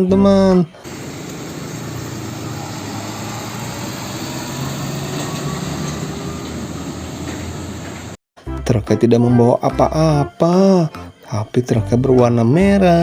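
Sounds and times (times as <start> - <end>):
truck engine running: 0.8 - 8.2.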